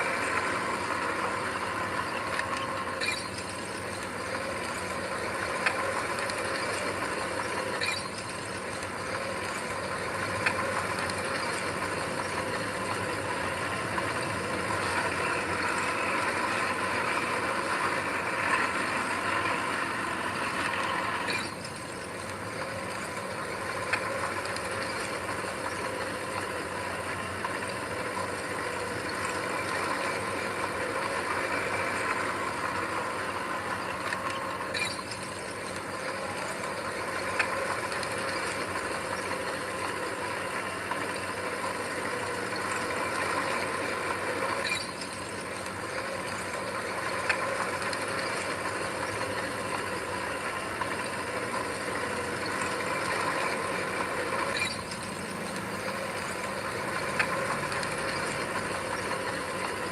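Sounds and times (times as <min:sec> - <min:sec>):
heavy machine engine running: 0:00.0 - 0:59.9.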